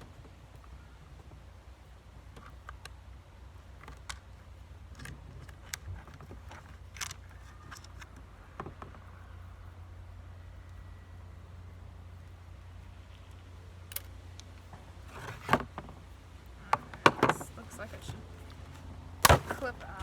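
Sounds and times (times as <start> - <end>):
steady low hum: 0.0 - 20.0
hand tools and parts clicking: 3.6 - 9.0, 13.1 - 20.0.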